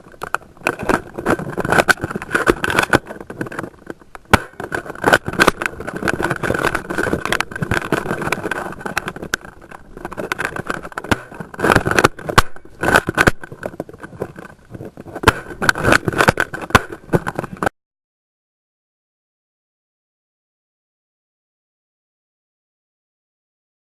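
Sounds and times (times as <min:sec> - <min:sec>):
rough rustling movement: 0:00.0 - 0:17.7
sharp clicks and pops: 0:00.0 - 0:17.7.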